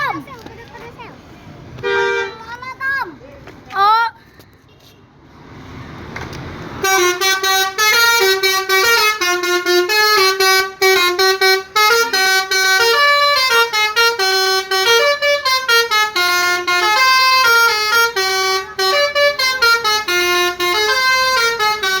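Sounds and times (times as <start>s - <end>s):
musical bus air horn: 1.8s - 2.5s, 6.8s - 22.0s.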